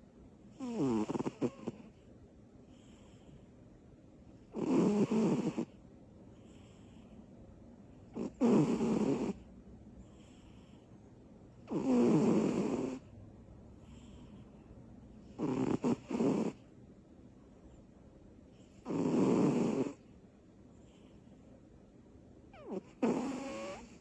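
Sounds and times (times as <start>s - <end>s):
cat snoring: 0.5s - 2.0s, 4.5s - 5.8s, 8.1s - 9.5s, 11.6s - 13.1s, 15.3s - 16.6s, 18.7s - 20.0s, 22.5s - 24.0s
faint breaths: 0.5s - 3.8s, 5.1s - 16.7s, 19.6s - 22.0s.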